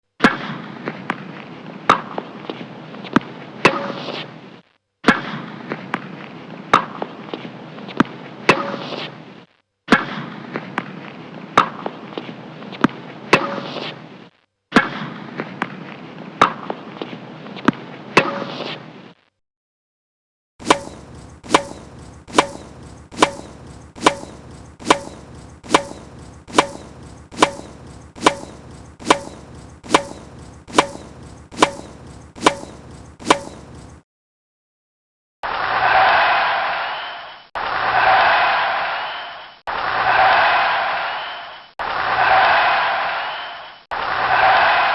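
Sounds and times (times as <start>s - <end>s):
tennis ball hits: 20.6s - 33.8s.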